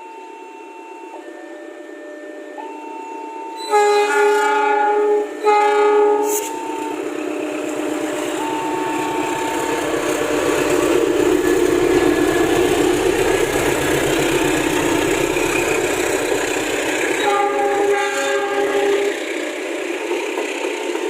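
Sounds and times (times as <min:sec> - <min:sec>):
locomotive horn chord: 0:03.6 - 0:19.6
diesel train rumbling past: 0:03.6 - 0:21.0.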